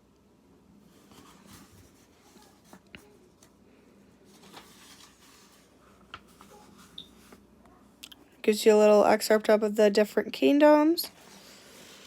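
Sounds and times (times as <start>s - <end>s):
book pages rustling: 0.9s - 3.6s, 4.2s - 7.5s.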